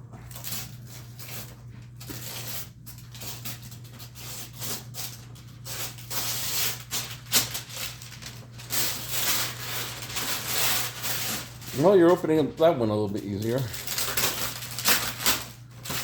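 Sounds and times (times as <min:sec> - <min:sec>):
wrapping paper rustling and tearing: 0:00.0 - 0:16.0
sharp paper rip: 0:04.1 - 0:11.9.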